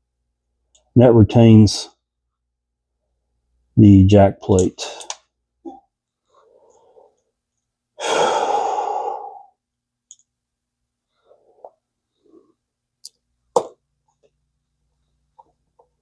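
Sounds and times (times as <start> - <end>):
man sighing: 8.0 - 9.5.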